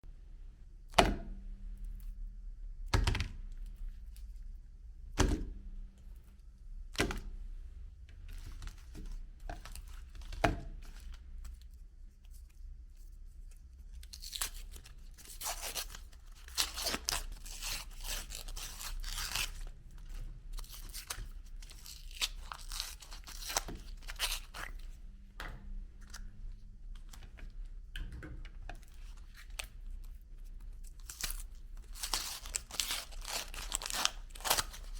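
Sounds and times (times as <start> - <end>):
crackling crunching in grinder: 14.1 - 24.8, 30.9 - 34.9.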